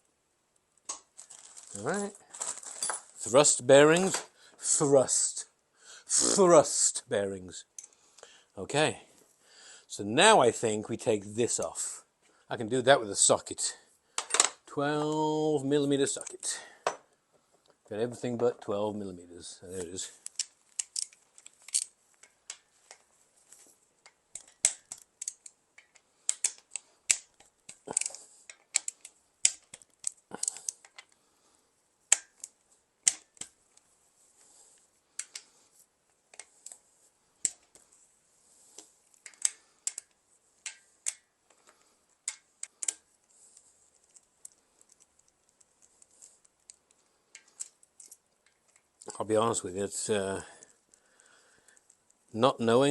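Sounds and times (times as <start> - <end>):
metal tools clicking and tapping: 24.0 - 31.2, 39.2 - 41.3, 46.4 - 48.9.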